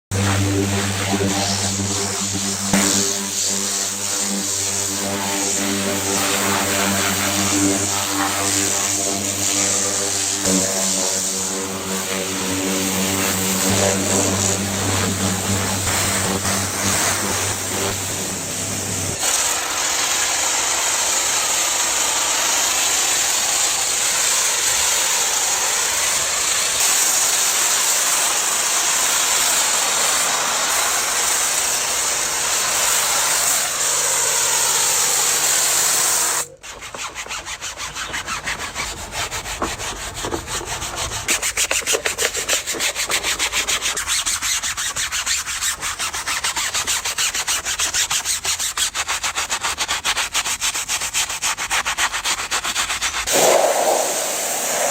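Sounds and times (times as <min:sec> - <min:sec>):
scrubbing strokes: 0:00.1 - 0:19.3, 0:36.4 - 0:54.9
pressure washer spray hissing: 0:00.1 - 0:36.5, 0:49.6 - 0:54.9.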